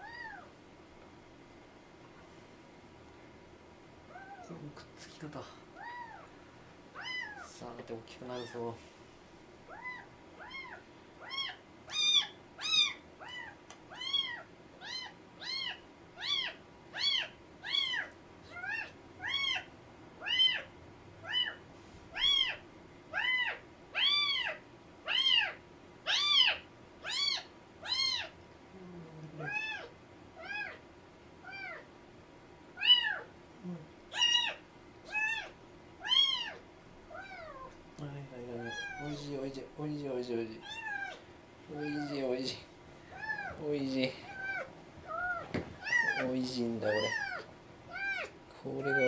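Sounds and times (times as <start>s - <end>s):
kitten mewing: 4.1s - 4.6s, 5.8s - 6.3s, 7.0s - 7.6s, 9.7s - 28.4s, 29.2s - 30.8s, 32.8s - 37.7s, 38.6s - 39.3s, 40.6s - 42.2s, 43.1s - 43.6s, 44.2s - 49.0s.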